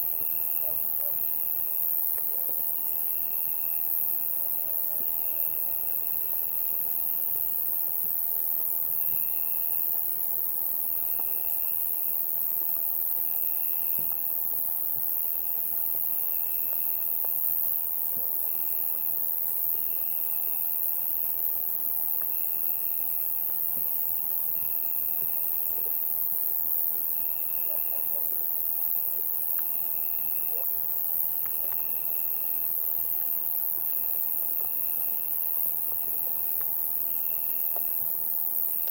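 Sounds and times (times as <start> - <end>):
crickets high-pitched drone: 0.0 - 38.9
trilled cricket chirps: 0.0 - 38.9.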